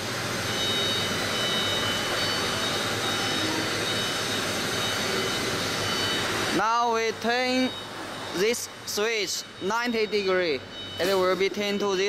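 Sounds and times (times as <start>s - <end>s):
milling machine rushing noise: 0.0s - 6.6s
faint high whine: 0.0s - 12.0s.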